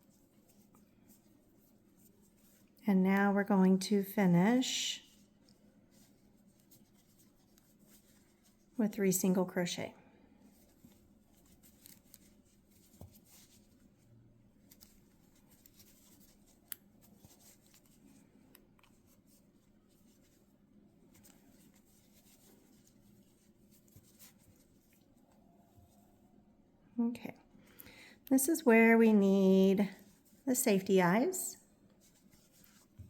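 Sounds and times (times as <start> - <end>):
crochet hook rustling yarn: 0.0 - 9.8, 10.4 - 26.3, 28.3 - 33.0.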